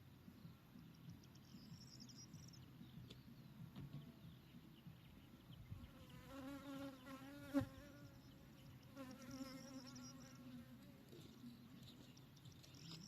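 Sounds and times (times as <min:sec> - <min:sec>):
honeybees buzzing: 0:05.9 - 0:11.2.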